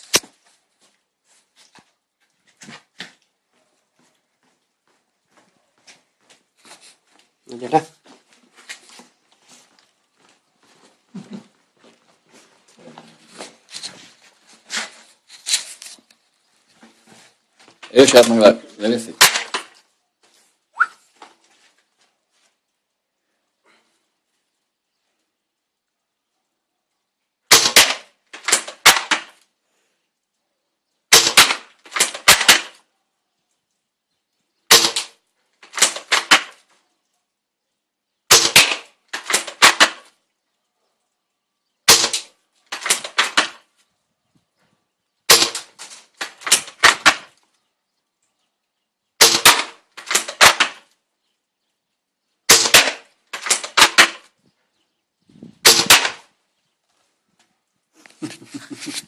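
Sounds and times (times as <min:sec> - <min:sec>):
airsoft rifle shots: 0:18.1 - 0:19.8, 0:27.5 - 0:29.4, 0:31.1 - 0:32.8, 0:34.7 - 0:36.6, 0:38.3 - 0:40.1, 0:41.9 - 0:43.7, 0:45.3 - 0:47.4, 0:49.2 - 0:50.9, 0:52.5 - 0:54.3, 0:55.6 - 0:56.4.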